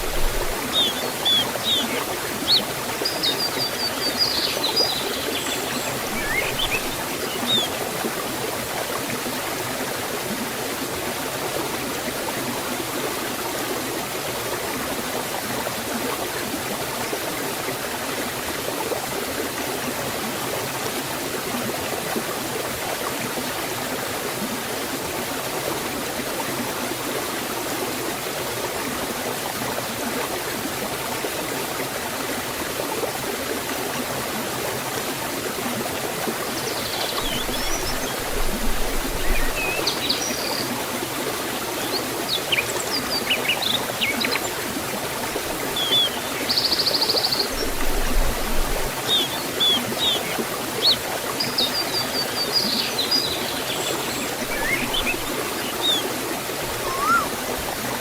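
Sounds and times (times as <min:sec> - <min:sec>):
waterfall and stream rushing: 0:00.0 - 0:58.0
high bird chirps: 0:00.7 - 0:07.7, 0:51.6 - 0:56.0, 0:56.8 - 0:57.4.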